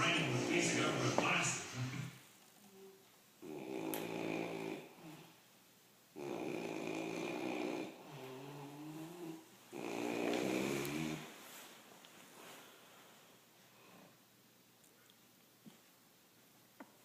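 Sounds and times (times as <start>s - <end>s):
man snoring: 3.4s - 5.2s, 6.2s - 11.3s
soft breath: 10.2s - 14.3s.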